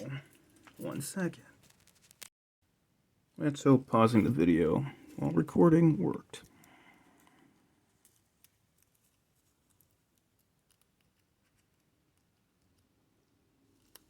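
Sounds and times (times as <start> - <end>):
faint small clicks: 8.0 - 12.9.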